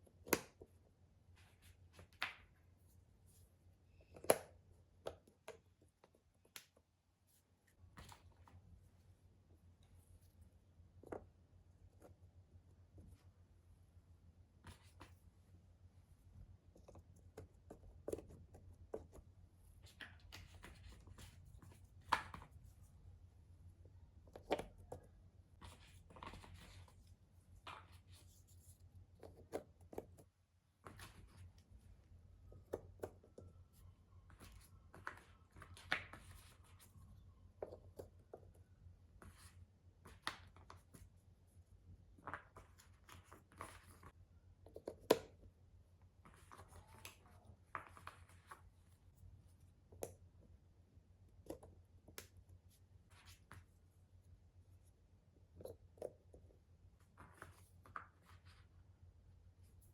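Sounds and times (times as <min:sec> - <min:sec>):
faint low hum: 0:00.0 - 0:59.9.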